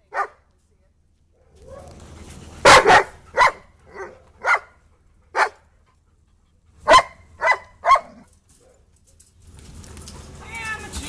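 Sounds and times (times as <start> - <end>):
dog barking: 0.1 - 0.4, 2.6 - 4.7, 5.4 - 5.6, 6.8 - 8.8.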